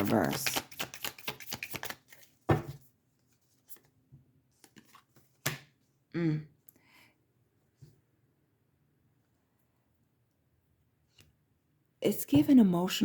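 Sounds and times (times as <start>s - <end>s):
cards clicking: 0.0s - 2.3s
cards snapping and tapping: 0.0s - 2.3s, 4.6s - 5.7s
person murmuring: 6.2s - 6.5s.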